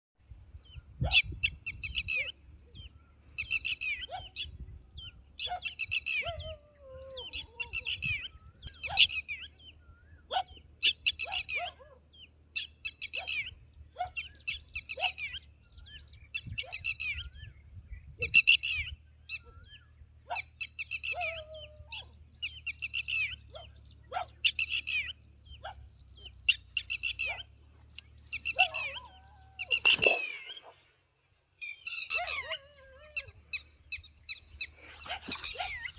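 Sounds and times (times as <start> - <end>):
small birds chirping: 0.5 - 35.9.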